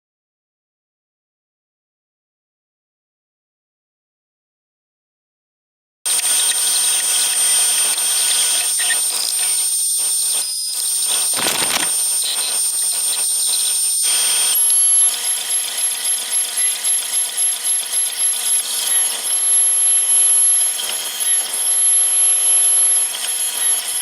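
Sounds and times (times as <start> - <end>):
power tool whining: 11.2 - 12.1.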